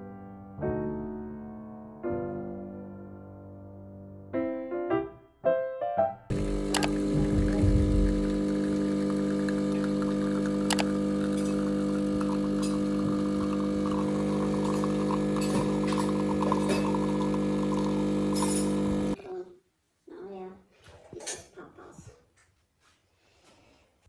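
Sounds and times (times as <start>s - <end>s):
appliance electric hum: 6.3s - 19.2s.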